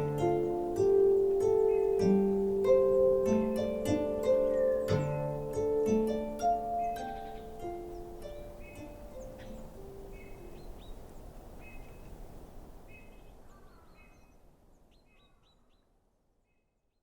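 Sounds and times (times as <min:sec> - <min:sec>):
plucked music note: 0:00.0 - 0:10.5
small bird calling: 0:00.0 - 0:17.0.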